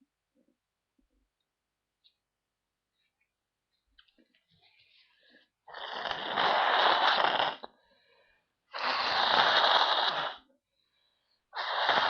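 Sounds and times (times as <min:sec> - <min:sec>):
person blowing nose: 0:05.7 - 0:07.8, 0:08.7 - 0:10.5, 0:11.6 - 0:12.0.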